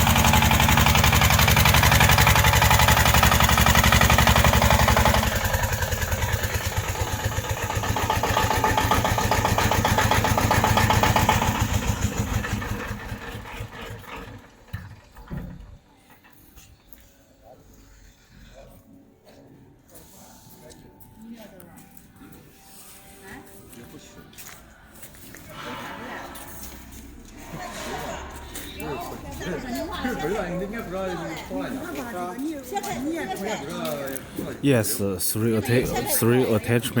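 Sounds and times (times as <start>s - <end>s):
small tractor engine running: 0.0s - 15.6s.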